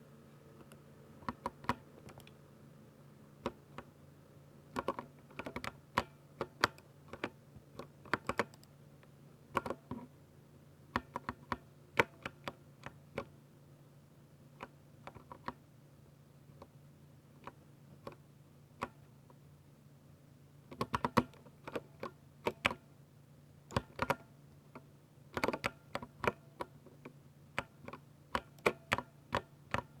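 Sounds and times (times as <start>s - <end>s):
faint low hum: 0.0s - 30.0s
mechanical keyboard typing: 1.2s - 2.4s, 4.7s - 8.7s, 9.5s - 10.1s, 20.7s - 22.8s, 23.7s - 24.2s, 25.3s - 26.7s, 27.6s - 30.0s.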